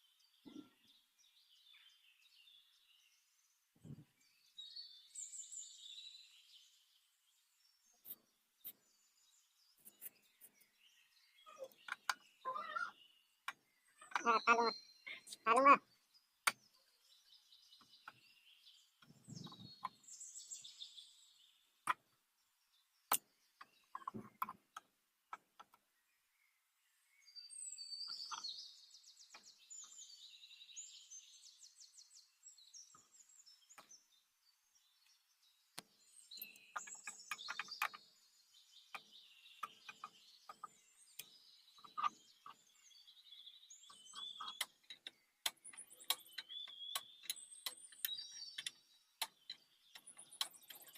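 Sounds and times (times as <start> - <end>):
small birds chirping: 0.0 - 50.9.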